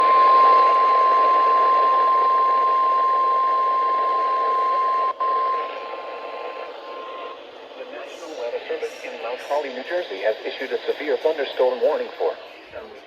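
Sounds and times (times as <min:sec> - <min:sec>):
steady high alarm tone: 0:00.0 - 0:07.5
radio static: 0:04.2 - 0:13.0.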